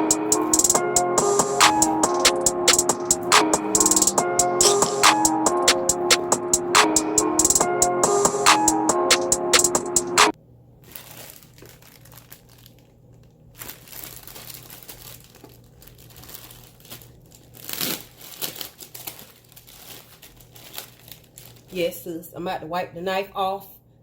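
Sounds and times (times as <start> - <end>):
packaging crinkling and rustling: 10.8 - 22.0.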